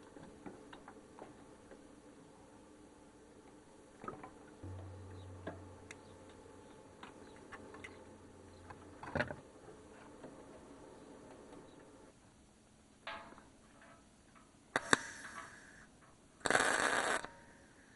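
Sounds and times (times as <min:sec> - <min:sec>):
low hum: 0:04.6 - 0:11.6.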